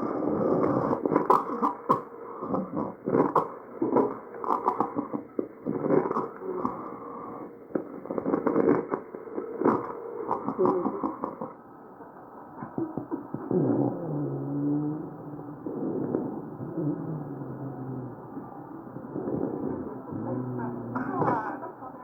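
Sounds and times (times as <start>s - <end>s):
breath sounds with crackles: 0.0s - 11.6s.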